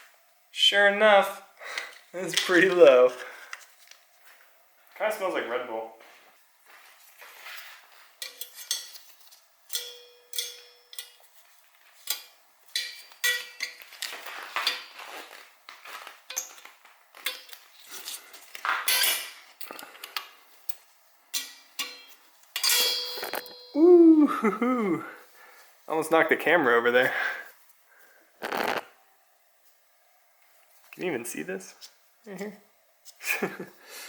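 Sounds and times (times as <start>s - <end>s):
metal tools clinking and knocking: 8.2s - 9.1s, 9.7s - 11.3s, 12.0s - 14.0s, 14.6s - 15.0s, 17.2s - 20.2s, 21.3s - 23.8s.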